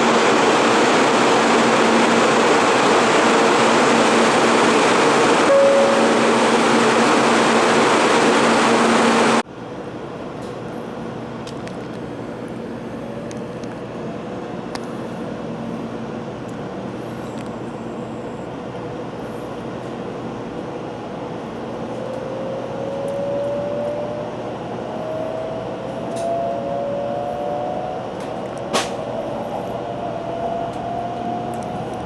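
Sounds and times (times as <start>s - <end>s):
faint rising motor whine: 0.0s - 9.4s
train running noise: 0.0s - 9.4s, 10.3s - 32.0s.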